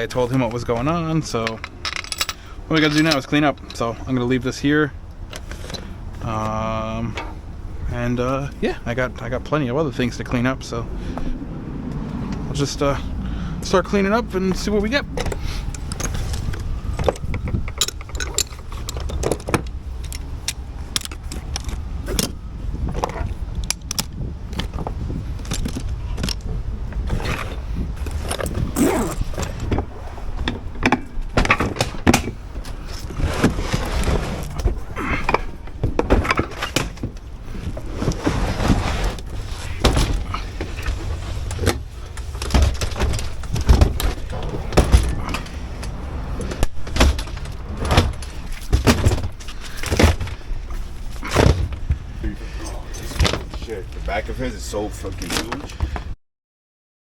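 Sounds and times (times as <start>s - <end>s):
metal tools clanking and rattling: 0.0s - 4.0s, 12.6s - 51.8s, 52.4s - 53.8s
steady low rumble: 0.0s - 55.3s.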